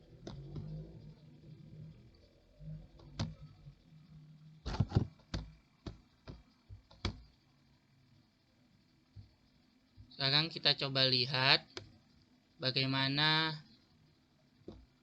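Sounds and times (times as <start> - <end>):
computer mouse clicking: 0.1 - 1.2, 2.9 - 3.7, 4.7 - 7.4.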